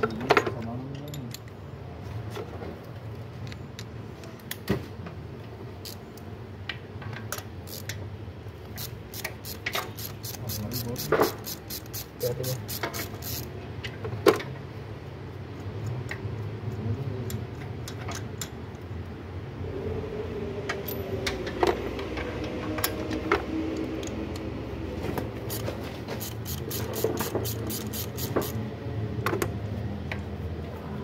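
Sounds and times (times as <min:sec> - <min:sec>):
hand tools clicking on metal: 0:08.7 - 0:13.5, 0:25.5 - 0:28.6.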